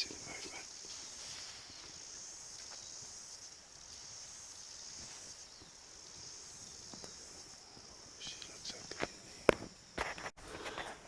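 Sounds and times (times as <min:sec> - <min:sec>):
faint rustling: 0:00.0 - 0:03.2
high-pitched insect chorus: 0:00.0 - 0:11.0.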